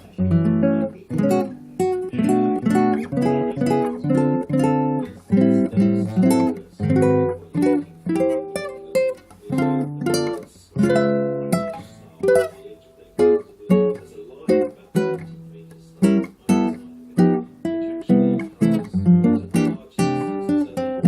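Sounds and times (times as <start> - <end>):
guitar strummed chords: 0.0 - 21.0.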